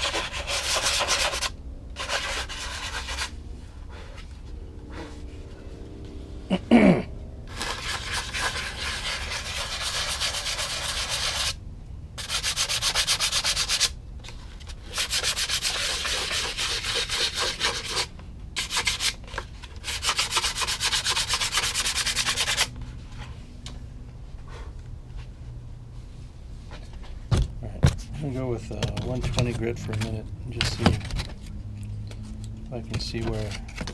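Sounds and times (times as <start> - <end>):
sandpaper rubbing by hand: 0.0 - 3.4, 7.5 - 11.6, 12.2 - 14.0, 14.9 - 19.2, 19.8 - 22.7.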